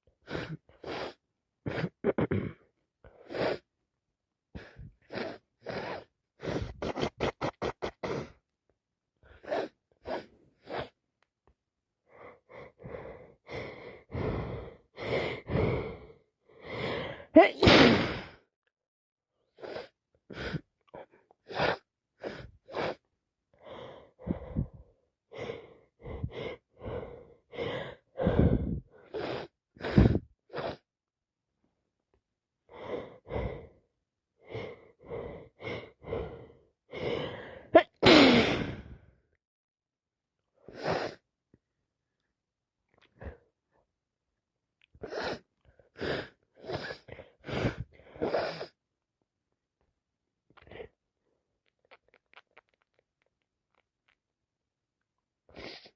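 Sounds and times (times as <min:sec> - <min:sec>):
gasping in-breaths: 0:12.0 - 0:18.4, 0:19.5 - 0:30.9, 0:32.7 - 0:38.0, 0:45.0 - 0:48.8
woman sneezing: 0:17.4 - 0:18.3, 0:37.8 - 0:38.8.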